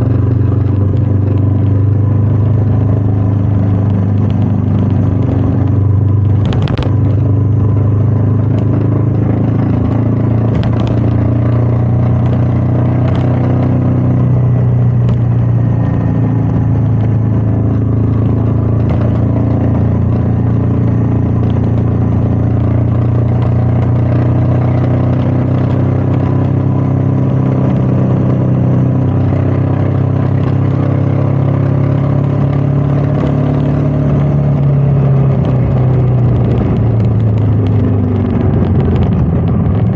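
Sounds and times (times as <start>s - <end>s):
wind rush: 0.0s - 13.6s, 34.5s - 39.9s
motorcycle engine running: 0.0s - 39.9s.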